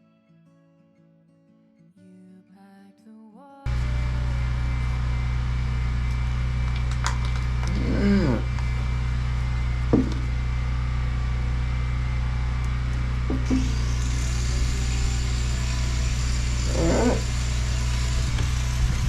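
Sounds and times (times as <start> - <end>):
motor humming: 3.7 - 19.0.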